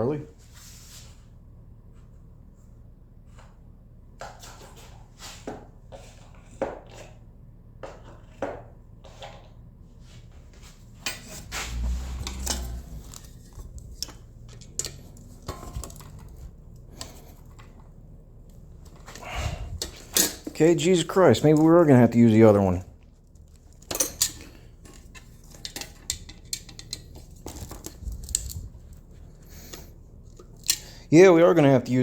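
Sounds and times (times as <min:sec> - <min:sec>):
hand tools clinking on metal: 0:11.0 - 0:13.4, 0:14.0 - 0:17.8, 0:19.8 - 0:21.8, 0:23.8 - 0:28.6.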